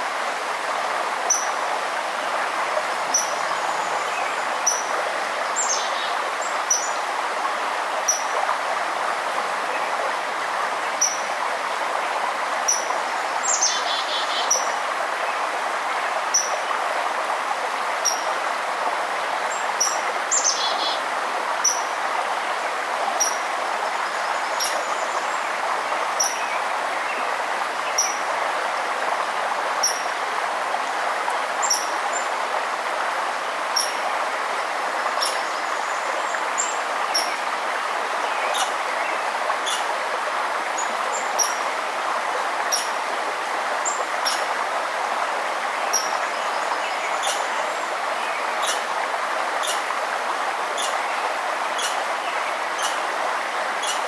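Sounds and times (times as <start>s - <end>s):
river rushing: 0.0s - 54.0s.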